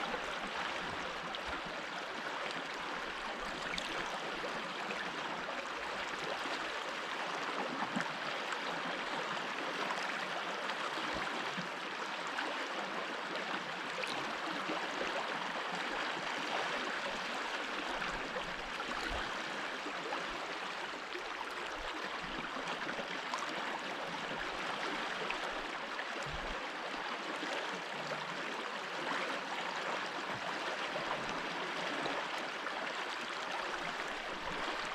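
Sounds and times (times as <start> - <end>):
stream running over stones: 13.0 - 34.9.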